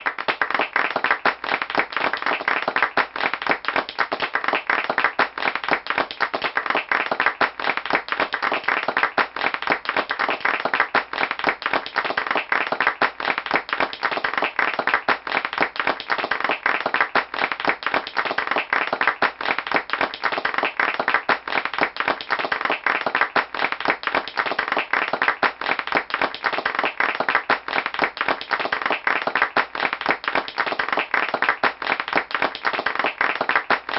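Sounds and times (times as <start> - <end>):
audience clapping: 0.0 - 33.9.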